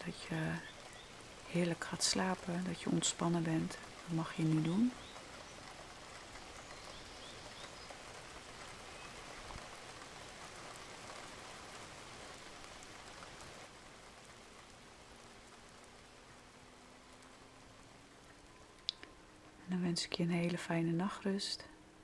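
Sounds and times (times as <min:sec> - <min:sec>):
steady rainfall: 0:00.0 - 0:22.0
faint bird chirps: 0:00.6 - 0:01.2, 0:06.3 - 0:08.0.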